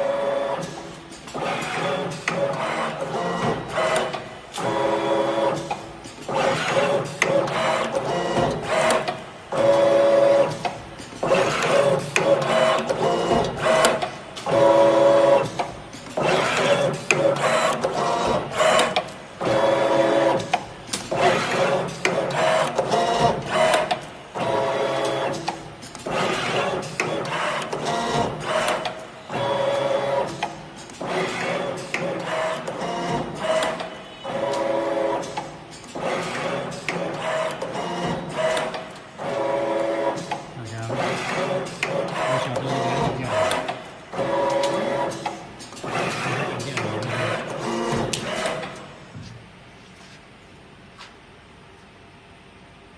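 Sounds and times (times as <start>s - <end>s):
machine motor whine: 36.0s - 48.9s.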